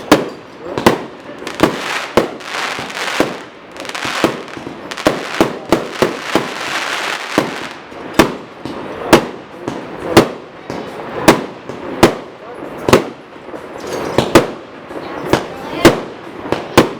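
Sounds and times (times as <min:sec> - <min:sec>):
fireworks bangs: 0:00.0 - 0:16.9
fireworks crackling: 0:00.0 - 0:16.9.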